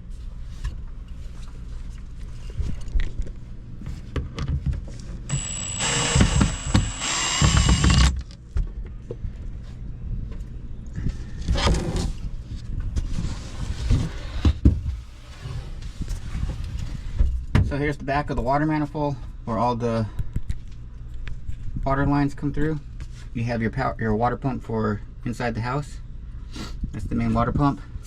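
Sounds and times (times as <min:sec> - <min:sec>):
drill motor whining: 0:05.3 - 0:08.2.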